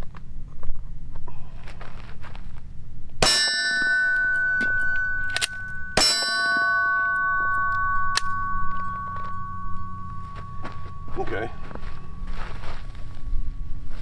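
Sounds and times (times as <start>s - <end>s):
steel plate ringing: 3.2s - 14.0s.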